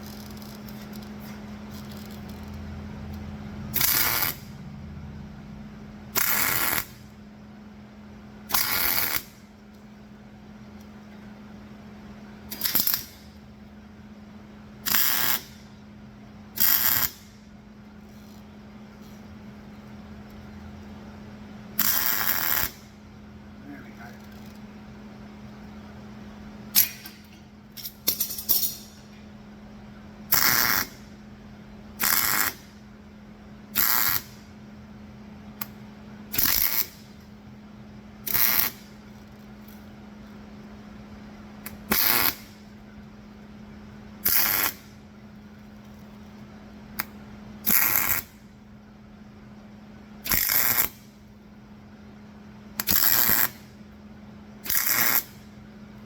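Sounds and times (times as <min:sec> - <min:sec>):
arc welder crackling: 0:00.0 - 0:04.6, 0:06.1 - 0:07.2, 0:08.4 - 0:10.0, 0:12.2 - 0:15.9, 0:16.5 - 0:29.1, 0:30.2 - 0:34.7, 0:35.4 - 0:37.6, 0:38.2 - 0:48.7, 0:50.2 - 0:51.4, 0:52.6 - 0:53.9, 0:54.6 - 0:56.0
steady low hum: 0:00.0 - 0:56.0.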